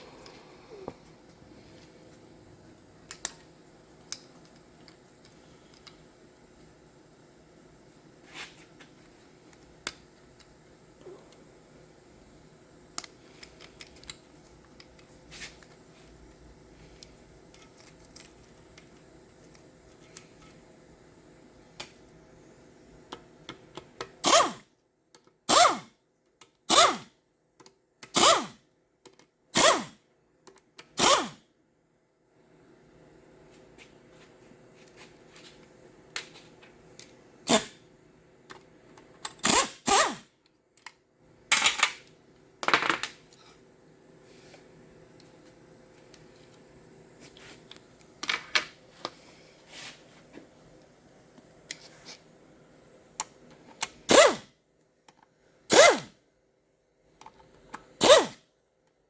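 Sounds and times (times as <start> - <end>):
air tool bursts: 24.2 - 24.6, 25.5 - 25.9, 26.7 - 27.0, 28.2 - 28.6, 29.6 - 30.0, 31.0 - 31.4, 39.4 - 40.3, 54.1 - 54.4, 55.7 - 56.1, 58.0 - 58.4.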